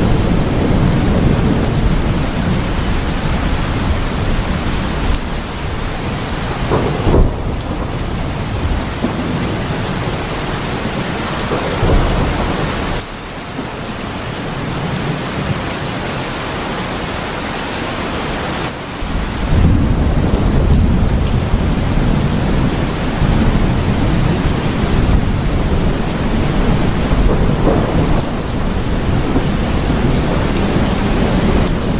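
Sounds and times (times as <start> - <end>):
thunder crack and rumble: 0.0 - 15.7, 19.0 - 31.9
heavy rain falling: 0.0 - 31.9.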